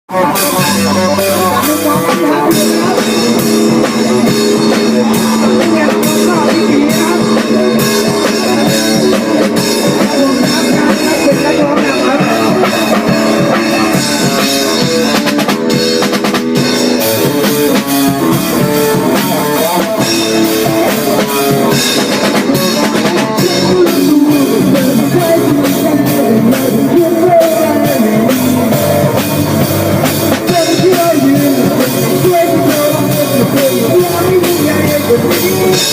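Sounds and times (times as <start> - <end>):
rock band music: 0.0 - 35.9.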